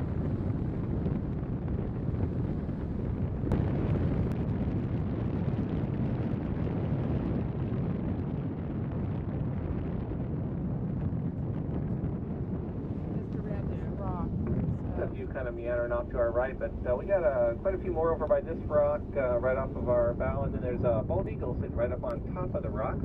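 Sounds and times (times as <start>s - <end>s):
wind buffeting microphone: 0.0s - 23.0s.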